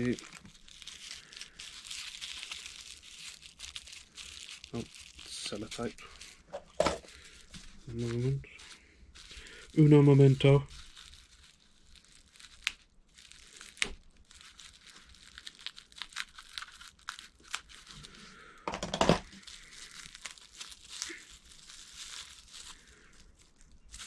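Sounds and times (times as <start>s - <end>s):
crinkling: 0.0s - 24.0s
tape ripping: 10.8s - 18.1s.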